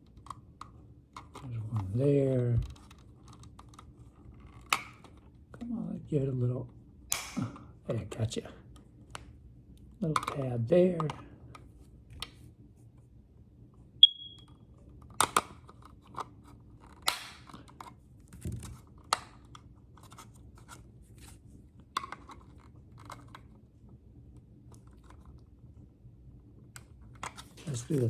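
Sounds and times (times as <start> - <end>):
high-pitched chirp: 14.0 - 14.5.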